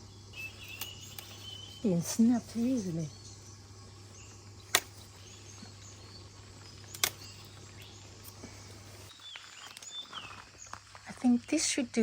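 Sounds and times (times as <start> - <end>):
faint outdoor background: 0.0 - 12.0
leaf stalk snapping: 4.7 - 5.2, 6.6 - 8.6.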